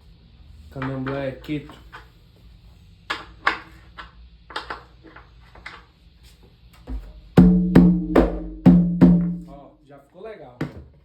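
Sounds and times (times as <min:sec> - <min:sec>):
hand strike on drum head: 0:07.0 - 0:09.5.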